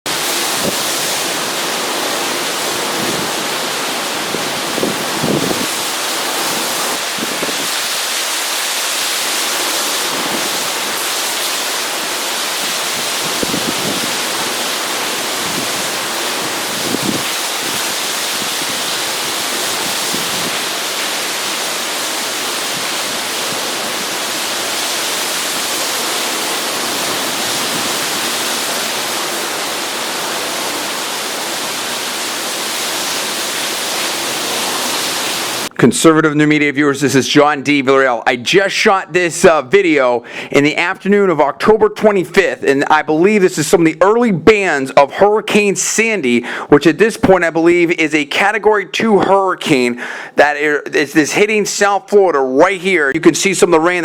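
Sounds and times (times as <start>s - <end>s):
wind gusts buffeting microphone: 0.1s - 8.1s, 9.7s - 11.4s, 12.6s - 21.2s, 22.2s - 29.0s
heavy rain pounding: 0.1s - 36.0s, 37.3s - 54.0s.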